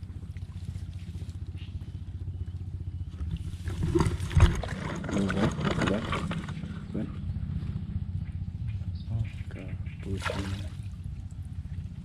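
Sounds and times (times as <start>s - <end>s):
steady low drone: 0.0s - 12.0s
fish thrashing and splashing in water: 3.1s - 6.6s, 10.1s - 11.4s.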